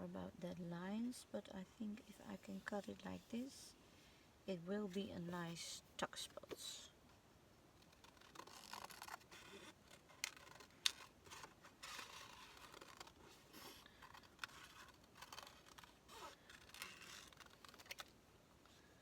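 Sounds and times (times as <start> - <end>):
scissors cutting paper: 7.8 - 18.1.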